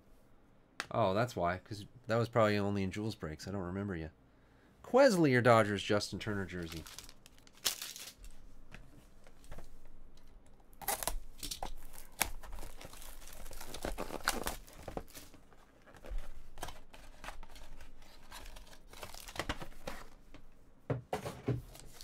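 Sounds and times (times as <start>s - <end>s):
packaging tearing and crinkling: 6.5s - 8.3s, 10.8s - 20.1s.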